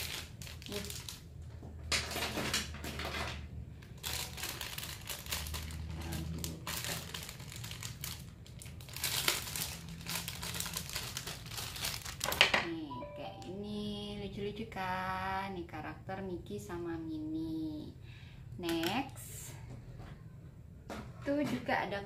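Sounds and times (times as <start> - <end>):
plastic packaging crinkling: 0.0 - 12.6.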